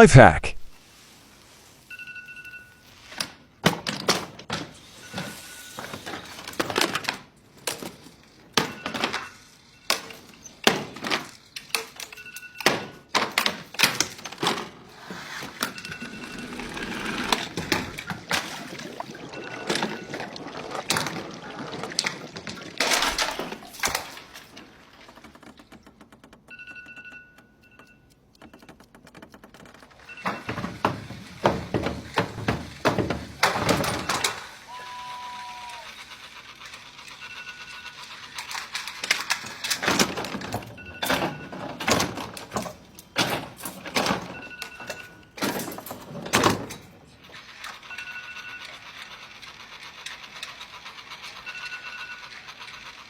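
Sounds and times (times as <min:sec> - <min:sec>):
alarm clock beeping: 0:01.9 - 0:02.8, 0:15.5 - 0:17.4, 0:26.5 - 0:28.7, 0:36.6 - 0:38.2, 0:47.8 - 0:49.1, 0:51.2 - 0:52.9
breaking sounds: 0:17.7 - 0:25.2.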